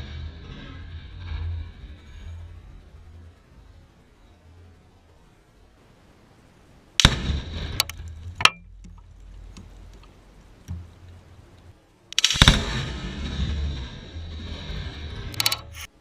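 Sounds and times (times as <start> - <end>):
sharp cracks: 6.9 - 16.0
loud explosion: 7.0 - 8.4, 12.2 - 15.3.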